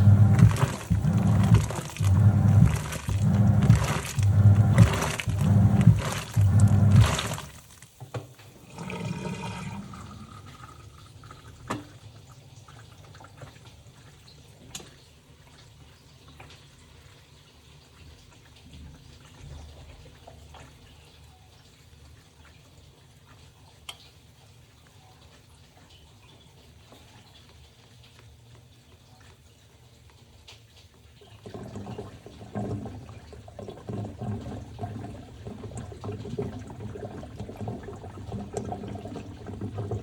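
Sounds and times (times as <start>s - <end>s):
water sloshing in washing machine: 0.0s - 40.0s
water trickling and dripping: 0.0s - 40.0s.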